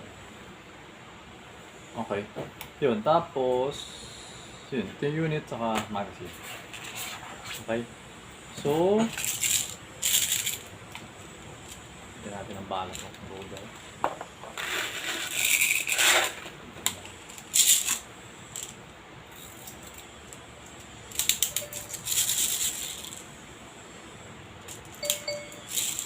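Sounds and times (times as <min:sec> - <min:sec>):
plastic pellets rattling and clicking: 0:09.1 - 0:10.6, 0:14.6 - 0:16.4, 0:17.0 - 0:18.8, 0:21.1 - 0:23.2.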